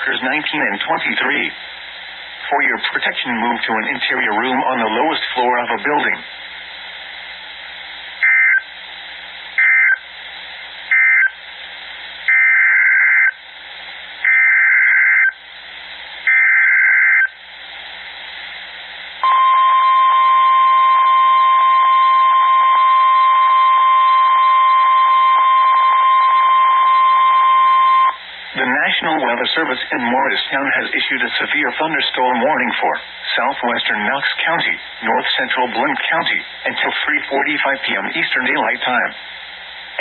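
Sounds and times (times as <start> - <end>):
radio hiss: 0.0 - 40.0
steady warning alarm tone: 8.2 - 8.6, 9.6 - 10.0, 10.9 - 11.3, 12.3 - 13.4, 14.2 - 15.4, 16.3 - 17.4, 19.2 - 28.2.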